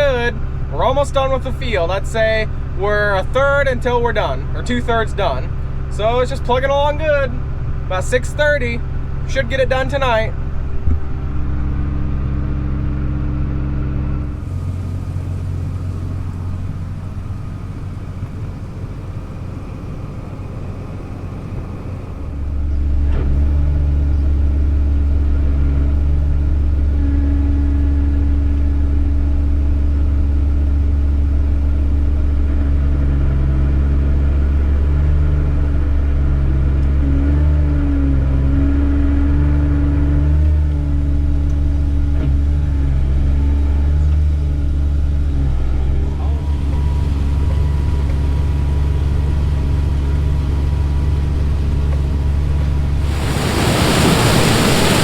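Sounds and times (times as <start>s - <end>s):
diesel engine running under load: 0.0s - 55.0s.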